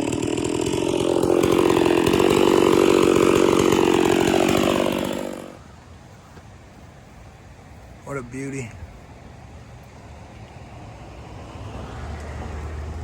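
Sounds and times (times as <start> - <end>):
chainsaw cutting log: 0.0 - 5.6.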